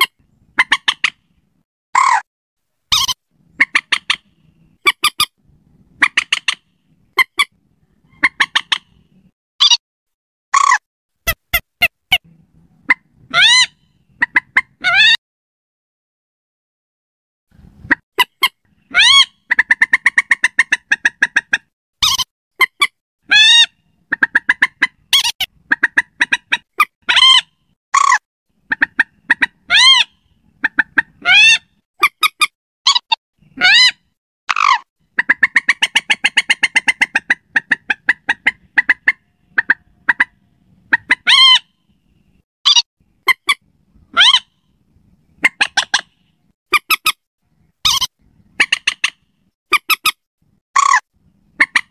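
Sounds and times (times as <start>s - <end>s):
moorhen calls: 17.8s - 41.8s, 42.7s - 44.6s.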